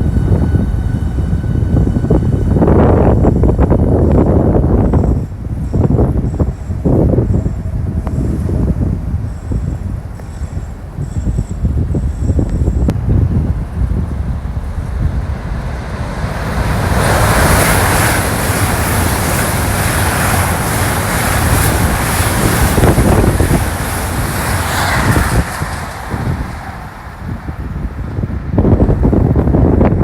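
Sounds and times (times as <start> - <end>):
broad rushing noise: 0.0 - 30.0
wind buffeting microphone: 0.0 - 30.0.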